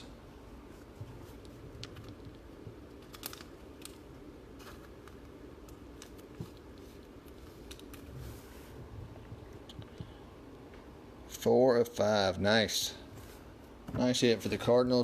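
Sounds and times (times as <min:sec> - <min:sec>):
low steady hum: 0:00.0 - 0:15.0
trading cards clicking and rustling: 0:01.4 - 0:08.1.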